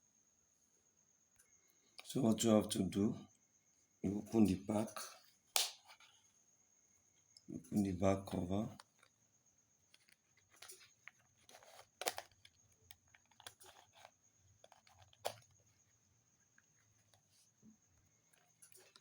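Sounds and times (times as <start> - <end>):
plastic snaps: 5.5 - 6.0
plastic clicks and scraping: 9.8 - 15.8, 18.2 - 19.0.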